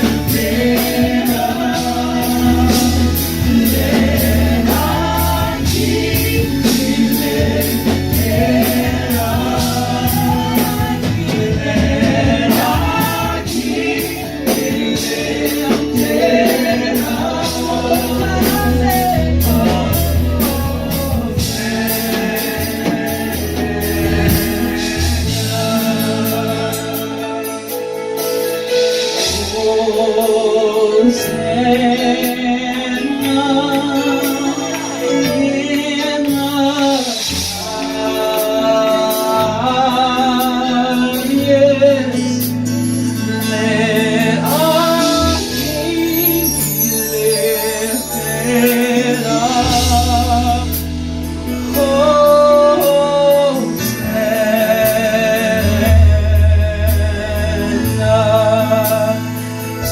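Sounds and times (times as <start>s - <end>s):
low bass: 0.0s - 27.4s, 47.5s - 59.9s
voices singing: 0.0s - 28.0s, 29.2s - 42.5s, 43.1s - 50.9s
steady drum beat: 0.0s - 30.4s, 43.4s - 46.8s
worship band playing gospel: 0.0s - 59.9s.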